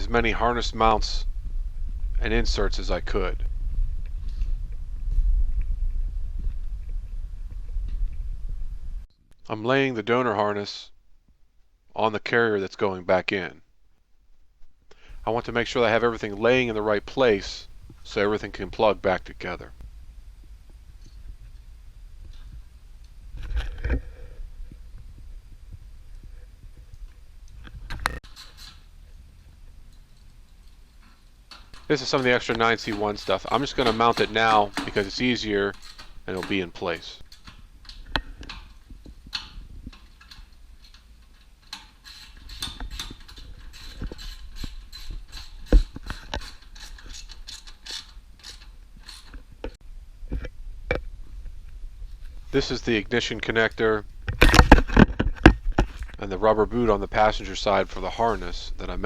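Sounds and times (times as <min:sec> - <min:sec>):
wiring harness rustling: 0:00.0 - 0:03.5, 0:14.9 - 0:19.8, 0:20.6 - 0:49.8, 0:52.1 - 0:59.0
steady low hum: 0:00.0 - 0:09.5, 0:13.8 - 0:41.0, 0:42.7 - 0:59.0
clicks and knocks: 0:31.0 - 0:51.0, 0:52.4 - 0:59.0.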